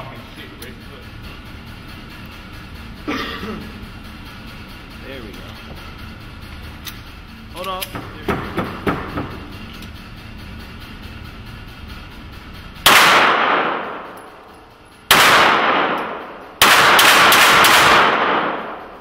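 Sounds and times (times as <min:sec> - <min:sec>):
handgun shots echoing indoors: 0:12.8 - 0:19.0.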